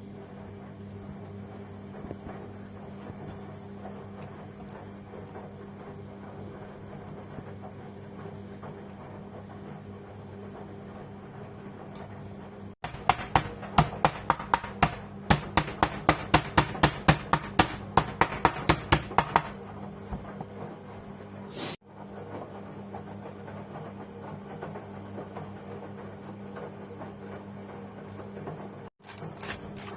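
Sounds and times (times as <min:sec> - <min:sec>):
steady background hum: 0:00.0 - 0:29.9
cleaver chopping meat: 0:12.8 - 0:20.4.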